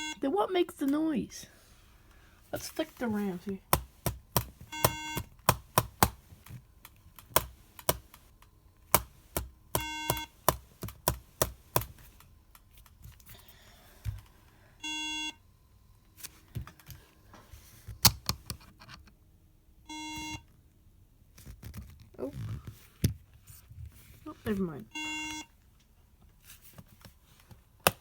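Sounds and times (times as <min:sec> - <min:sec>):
laptop beep: 0:00.0 - 0:00.2, 0:04.6 - 0:06.0, 0:09.8 - 0:10.5, 0:14.8 - 0:15.4, 0:19.9 - 0:20.4, 0:24.9 - 0:25.5
clicks and taps of laptop handling: 0:03.7 - 0:12.9.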